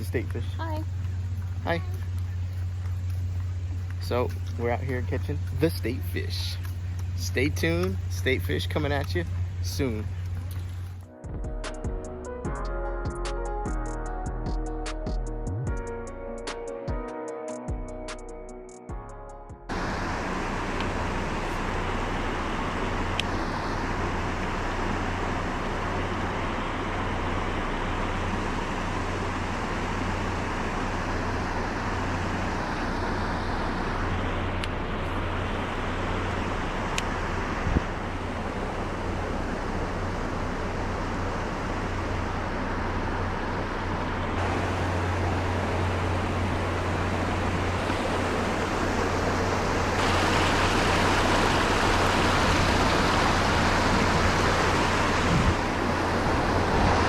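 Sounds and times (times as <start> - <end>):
river water rushing: 5.1 - 11.0, 35.2 - 57.0.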